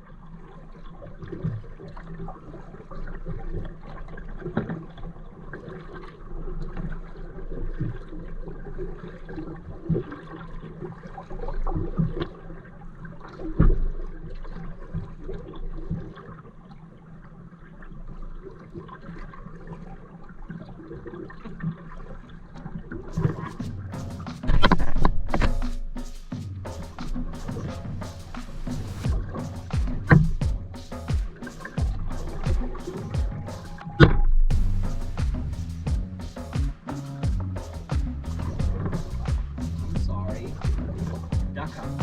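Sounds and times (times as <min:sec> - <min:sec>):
paddle strokes splashing water: 0:00.0 - 0:42.0
knocks and thumps: 0:29.0 - 0:42.0.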